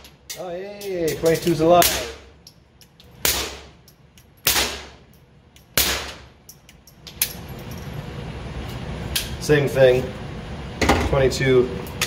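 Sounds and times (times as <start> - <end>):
suppressed pistol shots: 4.4 - 5.0, 5.8 - 6.3.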